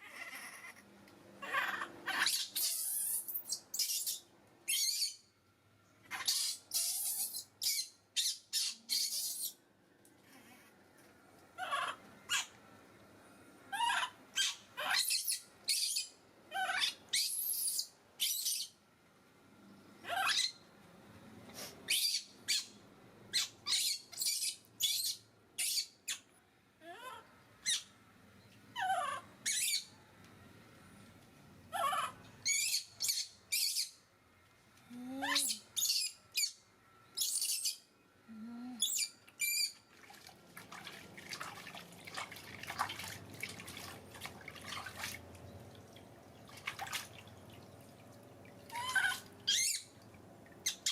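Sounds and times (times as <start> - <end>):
baby monkey squealing: 1.4 - 5.2, 6.1 - 9.6, 11.6 - 12.5, 13.8 - 18.7, 20.1 - 20.6, 23.3 - 26.2, 28.8 - 29.9, 31.7 - 33.9, 35.3 - 36.6, 48.7 - 49.9.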